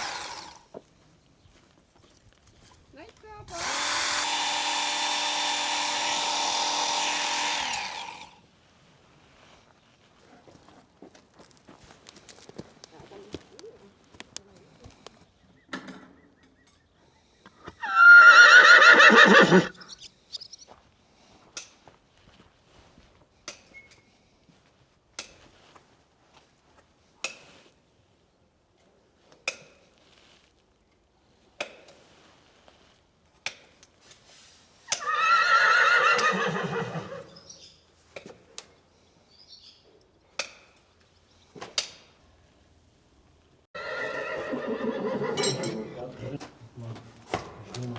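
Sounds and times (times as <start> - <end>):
horse whinnying: 17.7 - 20.0, 34.9 - 37.4, 43.8 - 45.9.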